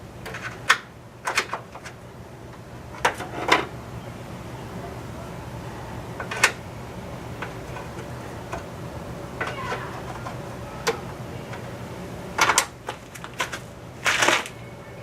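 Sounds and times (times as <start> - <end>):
steady low hum: 0.0 - 15.0
tools and parts clicking: 0.2 - 2.0.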